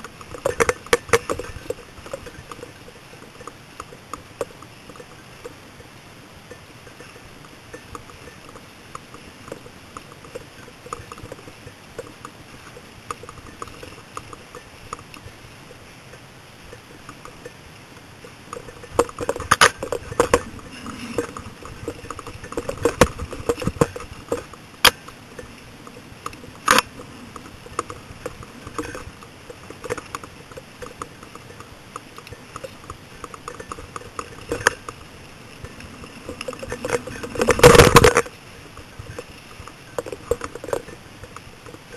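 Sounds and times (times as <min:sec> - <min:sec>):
mountain bike rattling: 0:00.0 - 0:41.9.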